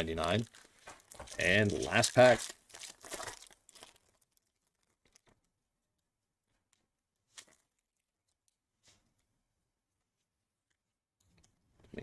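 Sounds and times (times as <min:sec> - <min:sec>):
trading cards rustling: 0:00.0 - 0:04.2.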